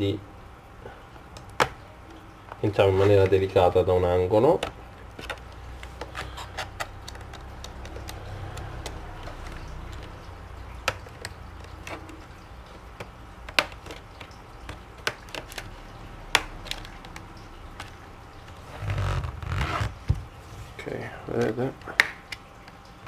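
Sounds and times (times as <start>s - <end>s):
cover handling noise: 1.2s - 1.8s, 4.4s - 22.2s
plastic clips snapping: 1.3s - 1.9s, 4.4s - 20.0s, 21.3s - 22.8s.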